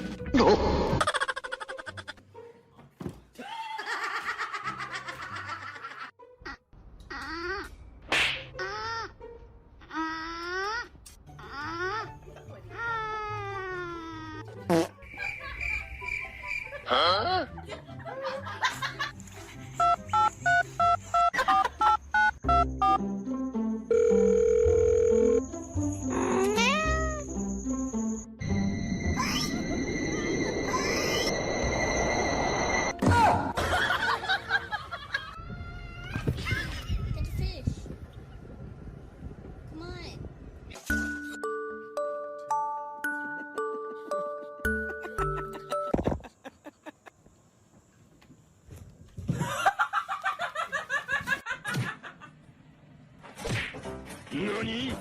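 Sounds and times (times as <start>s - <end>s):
background music: 0.0s - 35.4s, 40.8s - 46.2s
steady telephone tone: 23.9s - 25.4s.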